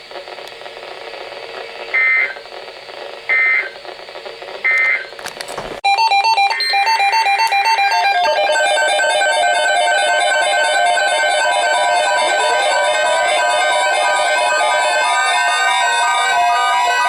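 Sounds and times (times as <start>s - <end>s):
warbling digital data tones: 5.9s - 17.0s.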